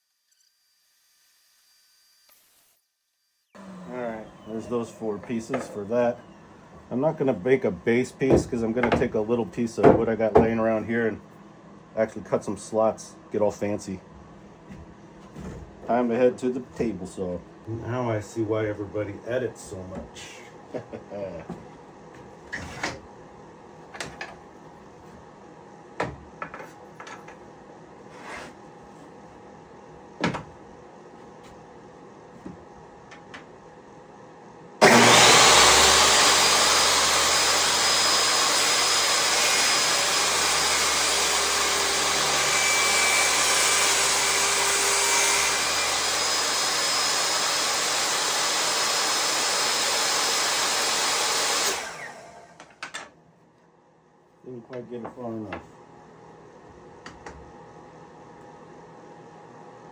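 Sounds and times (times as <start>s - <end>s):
table saw running: 3.6s - 10.5s, 34.8s - 52.7s
shop vacuum running: 3.6s - 11.2s, 12.0s - 23.2s, 34.8s - 53.0s
wood and tools knocking: 5.2s - 5.8s, 8.3s - 9.2s, 9.8s - 10.6s, 26.0s - 27.4s.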